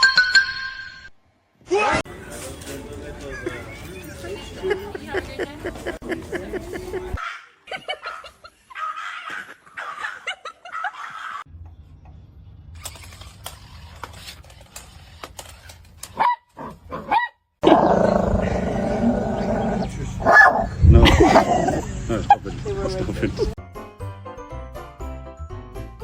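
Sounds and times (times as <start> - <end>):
dog barking and whining: 16.1 - 21.8.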